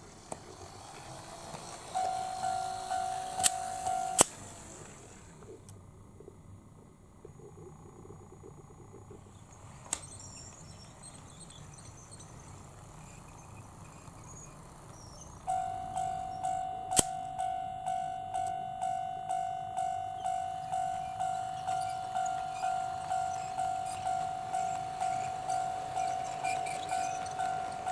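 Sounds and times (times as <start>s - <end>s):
electronic level crossing bell: 1.9s - 4.2s, 15.5s - 27.9s
low steady hum: 15.3s - 27.9s
sharp click: 16.9s - 17.3s.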